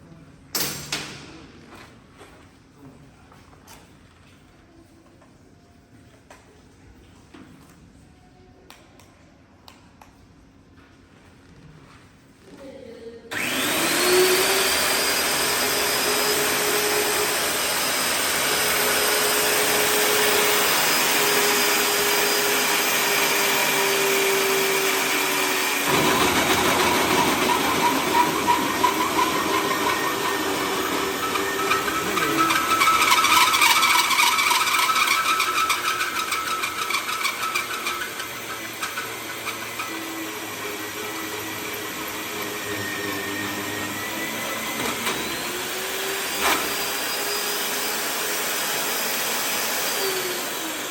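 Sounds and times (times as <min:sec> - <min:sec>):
cutter cutting steel pipe: 0:13.3 - 0:50.9
pipe cutting machine motor whining: 0:13.3 - 0:50.9.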